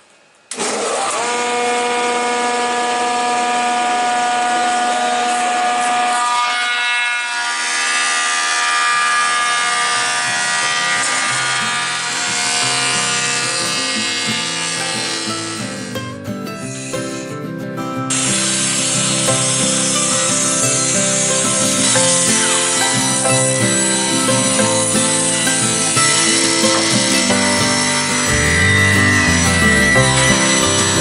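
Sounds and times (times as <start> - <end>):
planer motor whining: 0.5 - 17.4, 18.1 - 31.0
background music: 10.7 - 31.0.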